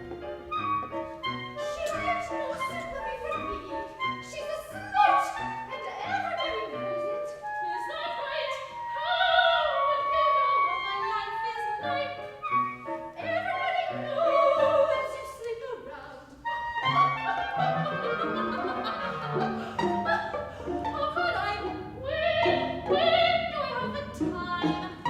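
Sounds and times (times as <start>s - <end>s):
instrumental accompaniment: 0.0s - 15.4s
soprano singing opera: 1.6s - 25.0s.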